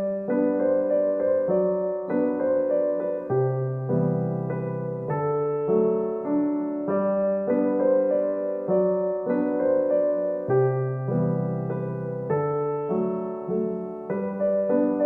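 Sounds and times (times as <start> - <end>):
gentle solo piano: 0.0 - 15.0.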